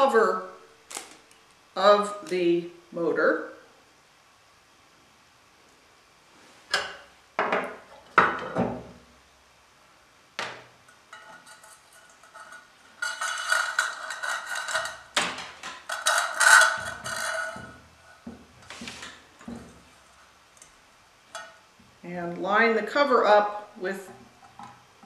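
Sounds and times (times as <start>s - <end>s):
metallic clatter and scraping: 10.9s - 20.3s.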